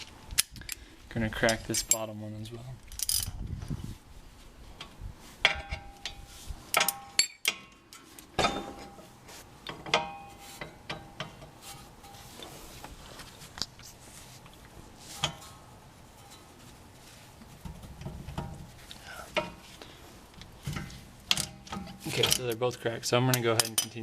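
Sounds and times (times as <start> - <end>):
steel wrenches clinking: 1.4 - 2.2, 2.9 - 3.4, 5.4 - 9.0, 20.7 - 24.0.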